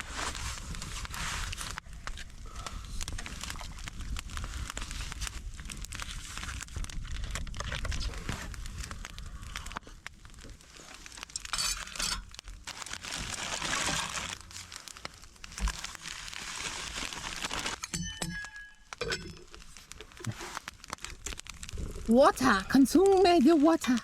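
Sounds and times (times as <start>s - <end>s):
rustling and crinkling handling: 0.0s - 24.0s
light ringing clinks: 17.8s - 19.4s.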